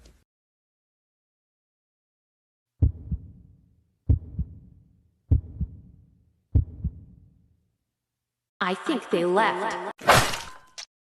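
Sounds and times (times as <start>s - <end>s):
heartbeat thumps: 2.8s - 3.5s, 4.1s - 7.3s.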